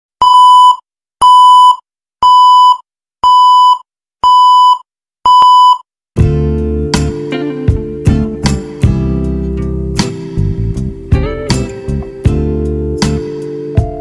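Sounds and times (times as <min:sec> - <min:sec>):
music: 0:06.2 - 0:14.0.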